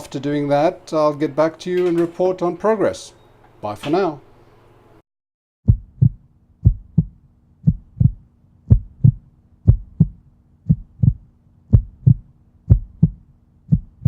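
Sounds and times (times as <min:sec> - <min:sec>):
heartbeat-like double thumps: 0:05.6 - 0:14.0
faint steady hum: 0:05.7 - 0:14.0.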